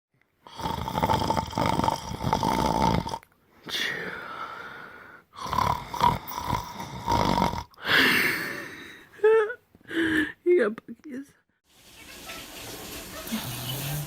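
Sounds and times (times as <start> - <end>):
person snoring loudly: 0.4 - 4.3, 5.3 - 8.5, 13.2 - 14.0.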